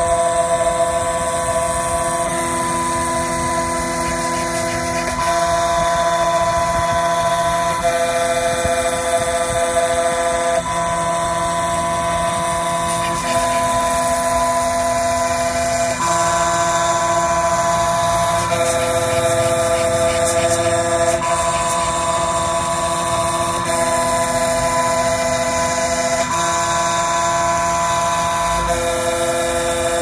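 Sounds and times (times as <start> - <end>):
milling machine motor whine: 0.0 - 30.0.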